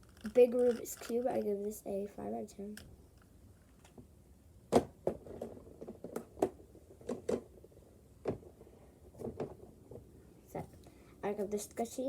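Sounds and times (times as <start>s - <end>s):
plastic toys clicking and knocking: 0.0s - 1.8s, 5.0s - 8.5s.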